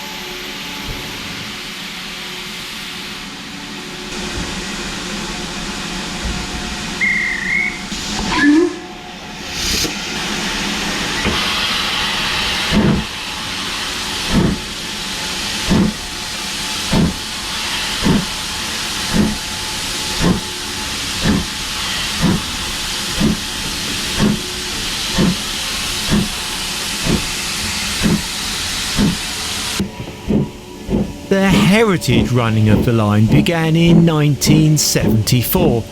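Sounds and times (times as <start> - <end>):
steam locomotive exhaust beats: 10.0 - 31.3
steam hissing: 10.6 - 31.3.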